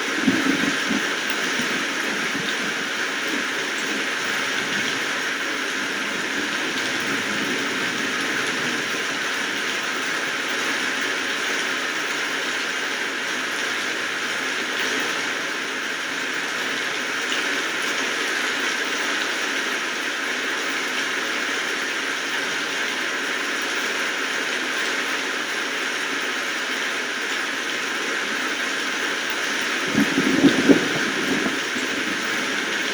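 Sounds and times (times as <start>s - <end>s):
steady rainfall: 0.0s - 32.9s.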